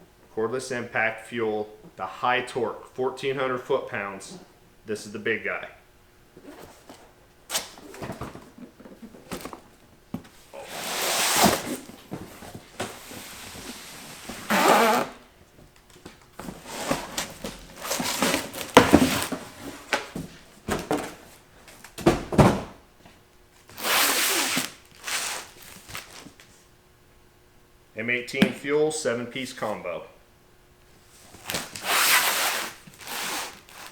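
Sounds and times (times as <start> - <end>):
cardboard and packaging rustling: 6.4 - 22.7, 23.9 - 26.5, 31.0 - 33.9
boxes and tools knocking: 16.4 - 21.2.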